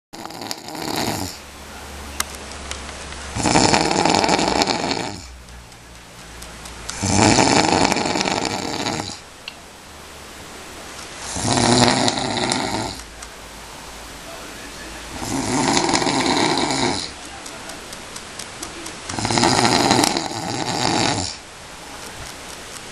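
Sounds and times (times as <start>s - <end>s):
person snoring: 0.2s - 1.4s, 3.3s - 5.3s, 6.9s - 9.2s, 11.2s - 13.0s, 15.1s - 17.2s, 19.1s - 21.4s.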